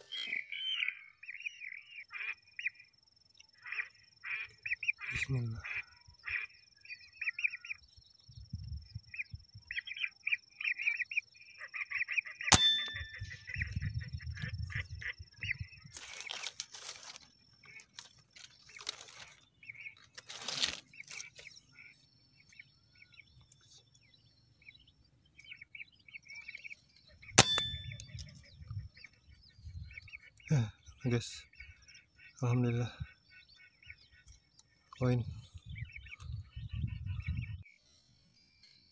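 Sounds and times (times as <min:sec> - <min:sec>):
ducks chirping whistles: 0:09.1 - 0:16.4, 0:25.4 - 0:35.0
gunshots with metallic ring: 0:12.5 - 0:13.4, 0:27.4 - 0:28.0.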